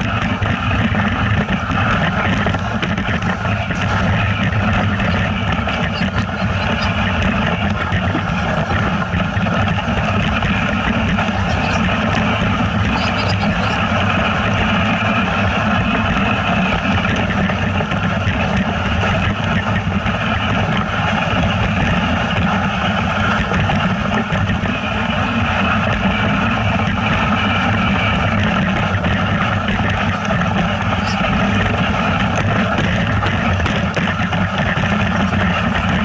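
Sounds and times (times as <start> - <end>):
dense movement noise: 0.0 - 36.0
vehicle engine running: 0.0 - 36.0.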